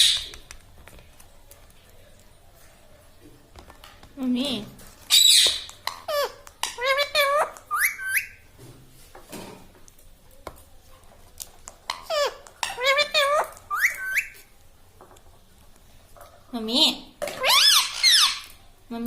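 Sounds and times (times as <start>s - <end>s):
parrot talking: 5.1s - 8.4s, 11.9s - 14.4s, 17.3s - 18.6s.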